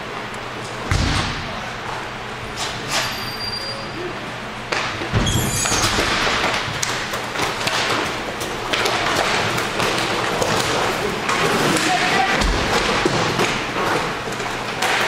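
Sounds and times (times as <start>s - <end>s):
hockey sticks and puck clattering: 4.7s - 15.0s.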